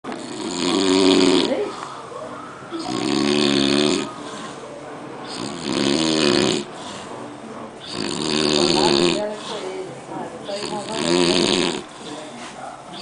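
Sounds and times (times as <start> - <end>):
man snoring: 0.1 - 1.7, 2.8 - 4.6, 5.3 - 6.7, 7.8 - 9.3, 10.6 - 12.0.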